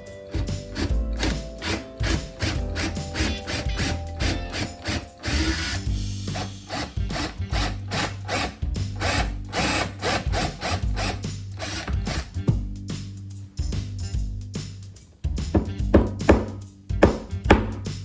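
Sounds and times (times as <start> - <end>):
background music with beat: 0.0 - 18.0
power drill running: 0.3 - 12.3.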